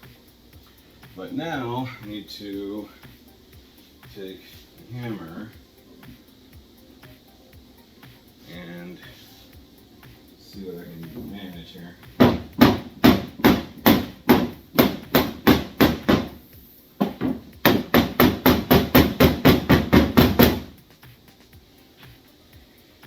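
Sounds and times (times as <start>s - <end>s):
hammer striking wooden shelf: 12.2s - 16.4s, 17.0s - 20.7s.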